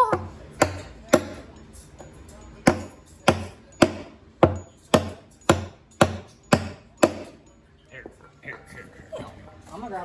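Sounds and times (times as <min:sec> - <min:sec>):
hammer striking metal punch: 0:00.0 - 0:07.4.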